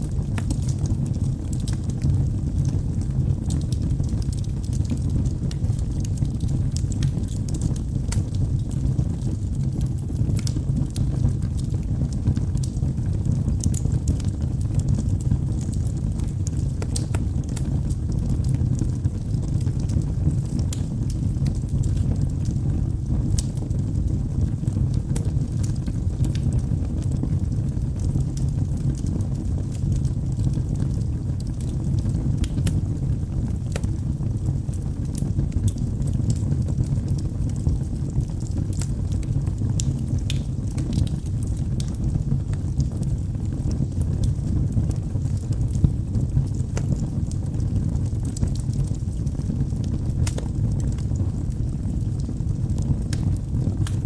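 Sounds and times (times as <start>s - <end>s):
fire crackling and popping: 0.0s - 54.0s
fire flames rumbling: 0.0s - 54.0s.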